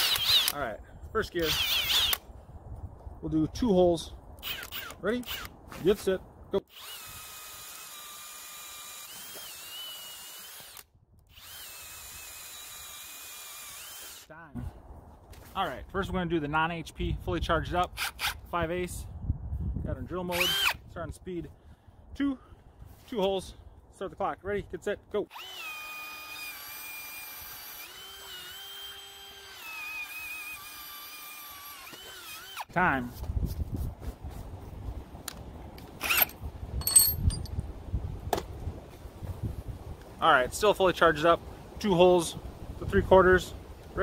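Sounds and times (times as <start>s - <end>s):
power drill motor whine: 0.0s - 0.6s, 1.5s - 2.2s, 6.7s - 14.3s, 20.4s - 20.7s, 25.3s - 32.7s, 36.0s - 36.4s.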